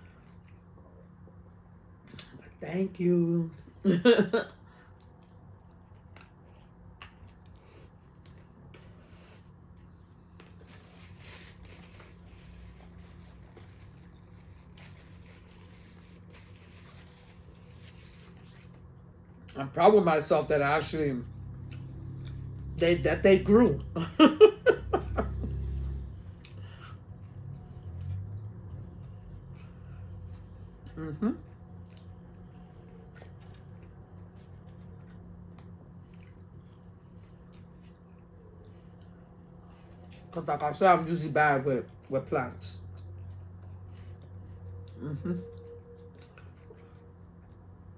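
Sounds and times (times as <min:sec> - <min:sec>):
person chewing food: 0:00.0 - 0:01.5, 0:04.6 - 0:19.6, 0:21.4 - 0:22.7, 0:25.5 - 0:40.4, 0:42.8 - 0:47.9
steady low hum: 0:00.0 - 0:47.9
paper wrapping rustling: 0:10.2 - 0:18.8.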